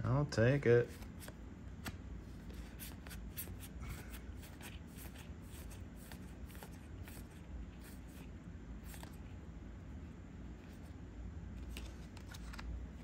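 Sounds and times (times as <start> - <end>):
trading cards rustling: 0.5 - 9.4, 11.6 - 13.0.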